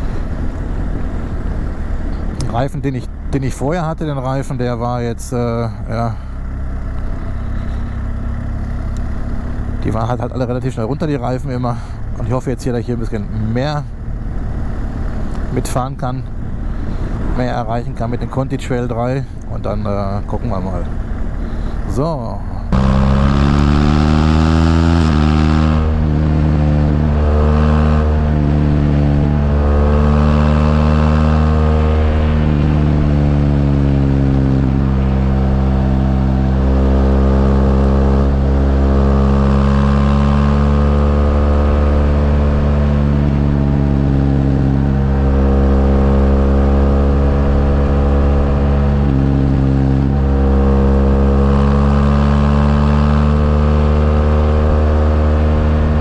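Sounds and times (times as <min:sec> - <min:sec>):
motorcycle engine revving: 0:05.4 - 0:10.6, 0:22.7 - 0:56.0.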